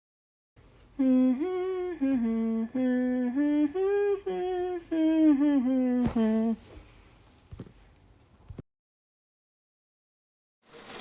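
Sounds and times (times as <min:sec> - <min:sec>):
person humming a tune: 0:00.9 - 0:06.8.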